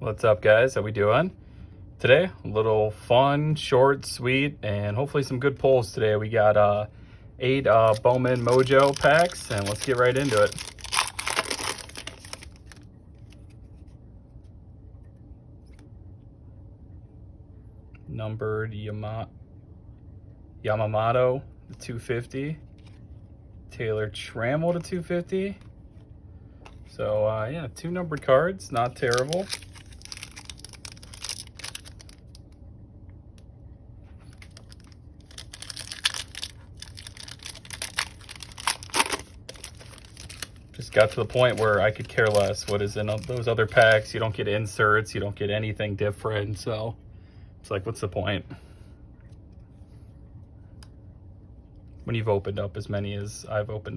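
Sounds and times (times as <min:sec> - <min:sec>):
low room rumble: 0:00.0 - 0:53.9
cards being handled: 0:07.6 - 0:14.0, 0:28.1 - 0:32.5, 0:34.1 - 0:44.2
wrapper crinkling and tearing: 0:07.7 - 0:13.5, 0:28.7 - 0:32.6, 0:34.2 - 0:44.2.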